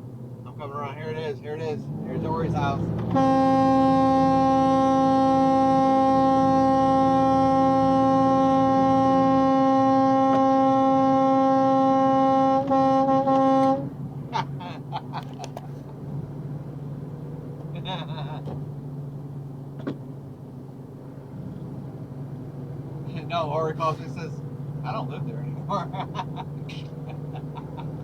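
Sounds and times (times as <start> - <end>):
air horn blast: 3.0 - 14.0.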